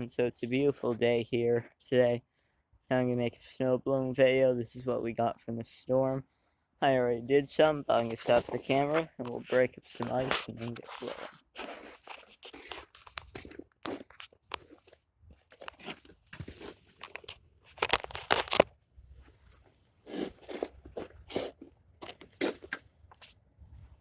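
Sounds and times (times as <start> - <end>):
crunches on icy snow: 7.6 - 23.4.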